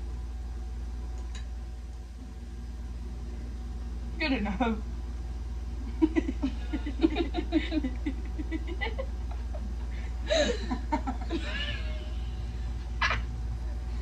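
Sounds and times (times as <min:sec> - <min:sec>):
low steady hum: 0:00.0 - 0:14.0
person laughing: 0:05.9 - 0:12.1.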